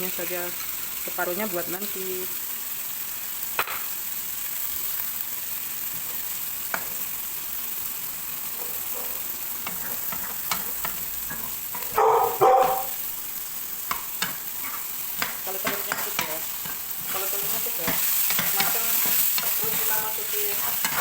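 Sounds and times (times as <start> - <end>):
food sizzling in hot oil: 0.0 - 21.0
spatula scraping a wok: 9.2 - 12.0, 13.8 - 21.0.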